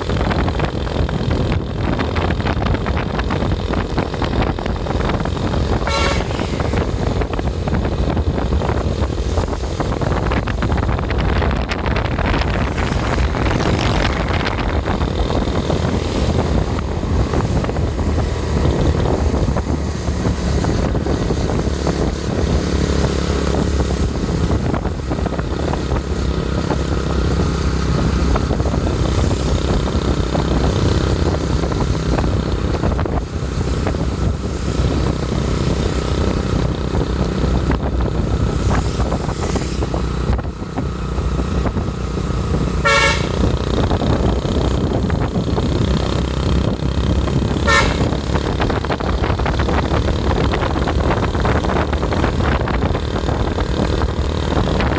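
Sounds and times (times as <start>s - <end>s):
vehicle engine and road noise: 0.0s - 54.9s
brief horn toot: 5.7s - 7.2s, 42.8s - 43.5s, 47.6s - 48.2s.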